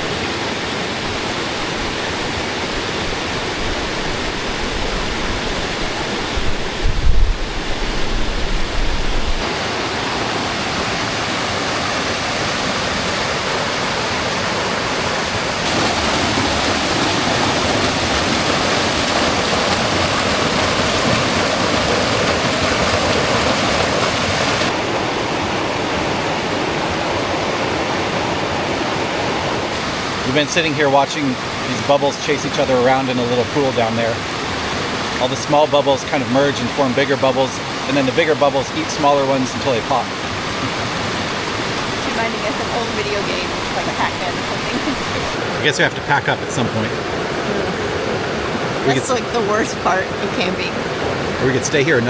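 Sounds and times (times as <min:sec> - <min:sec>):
water rushing over rocks: 0:00.0 - 0:52.0
low rumbling: 0:01.1 - 0:09.4.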